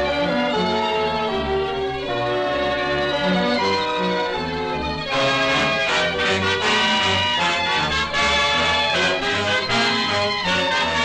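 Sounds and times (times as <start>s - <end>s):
orchestral music with brass: 0.0s - 11.0s.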